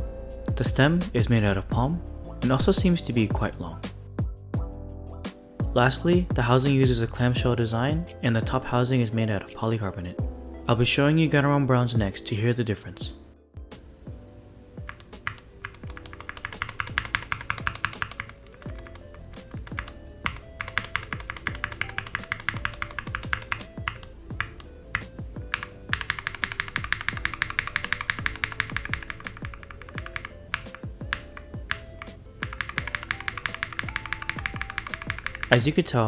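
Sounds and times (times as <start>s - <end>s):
background music: 0.0s - 36.0s
mechanical keyboard typing: 13.9s - 36.0s.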